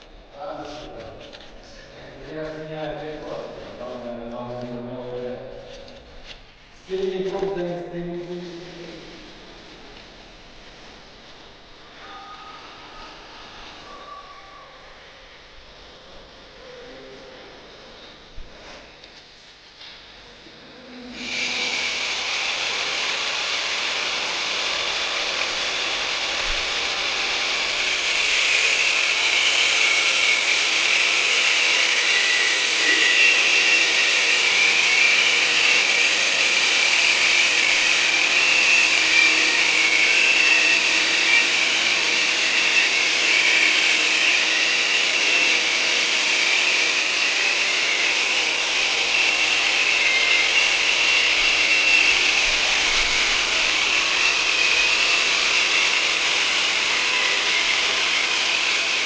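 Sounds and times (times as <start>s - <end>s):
power tool whirring: 21.2s - 59.0s.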